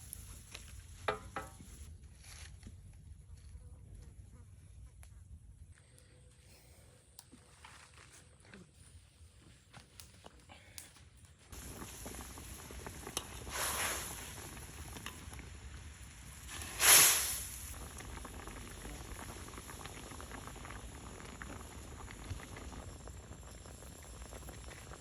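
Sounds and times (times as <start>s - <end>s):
water boiling in a pot: 11.5s - 25.0s
hissing surges: 16.4s - 17.7s.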